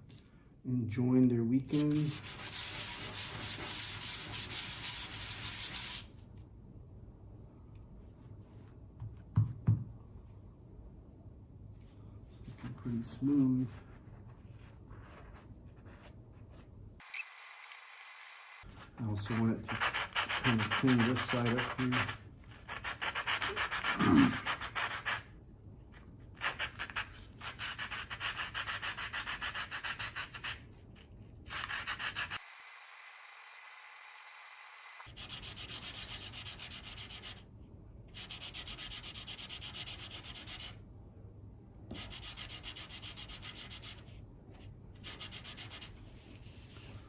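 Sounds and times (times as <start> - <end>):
sandpaper rubbing: 1.7 - 6.1, 19.3 - 25.2.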